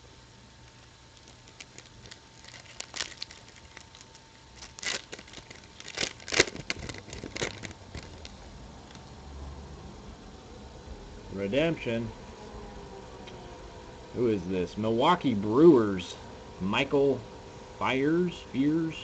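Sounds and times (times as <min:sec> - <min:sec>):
packaging crinkling and tearing: 0:00.7 - 0:09.0
cards rustling: 0:01.1 - 0:08.3.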